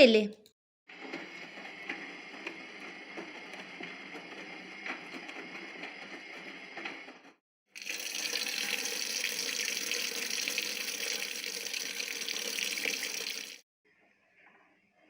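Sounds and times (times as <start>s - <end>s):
tap water splashing into sink: 7.8s - 13.6s.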